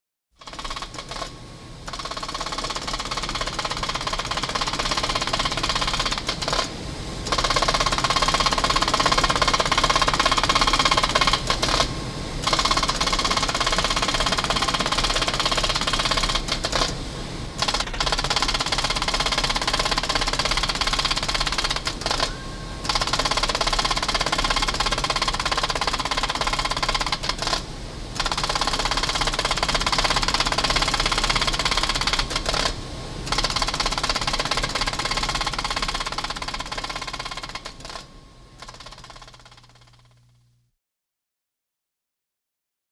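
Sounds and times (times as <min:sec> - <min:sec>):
card sorting machine clatter: 0:17.7 - 0:18.2.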